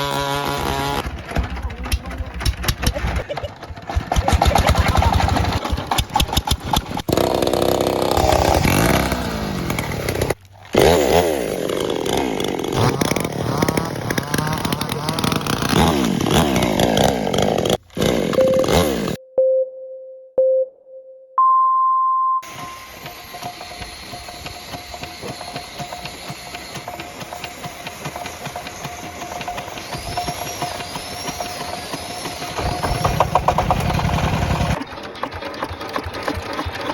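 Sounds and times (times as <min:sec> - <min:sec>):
small diesel engines running: 0:00.0 - 0:19.2, 0:22.4 - 0:36.9
short beeps: 0:18.4 - 0:23.2.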